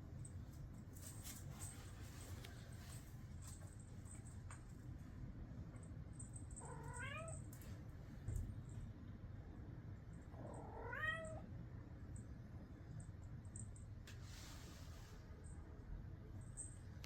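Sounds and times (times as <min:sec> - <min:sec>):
cat meowing: 0:06.6 - 0:07.4, 0:10.4 - 0:11.4.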